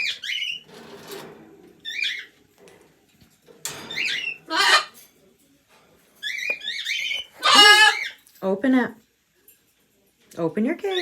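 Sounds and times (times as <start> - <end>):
parrot whistles and squawks: 4.0 - 5.0, 6.2 - 8.2.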